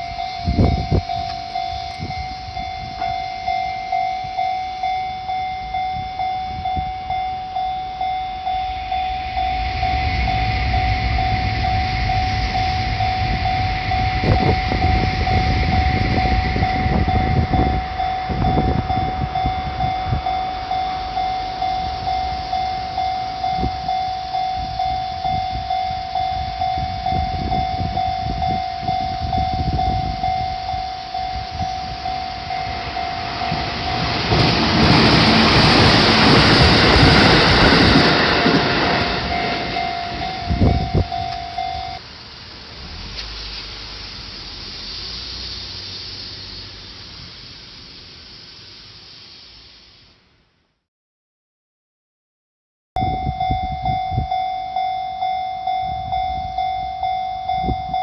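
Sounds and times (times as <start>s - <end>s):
level crossing warning bell: 0.0s - 42.0s, 53.0s - 58.0s
passing train rush: 0.0s - 50.4s, 53.0s - 58.0s
train wheels clattering on rails: 31.2s - 42.0s.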